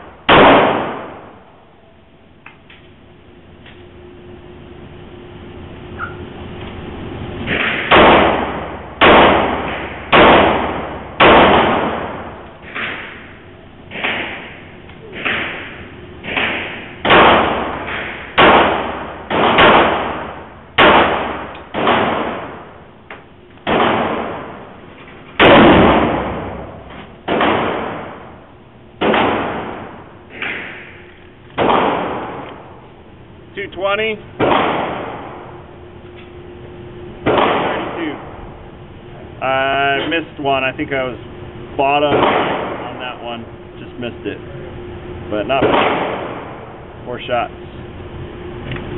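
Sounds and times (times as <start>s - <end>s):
pistol shots echoing: 0.0s - 1.5s, 7.4s - 22.9s, 23.6s - 24.8s, 25.4s - 32.8s, 34.4s - 35.8s, 37.2s - 38.4s, 41.8s - 43.3s, 45.4s - 46.9s.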